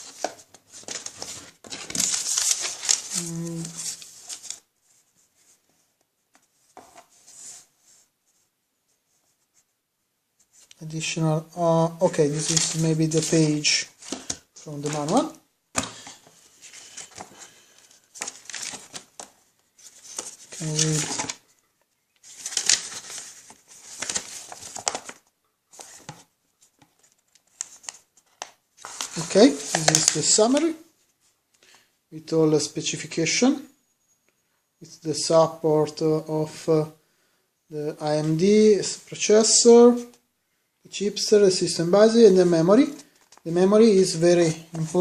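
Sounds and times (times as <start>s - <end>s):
paper rustling: 0.0s - 8.1s, 12.0s - 31.4s, 42.5s - 43.6s.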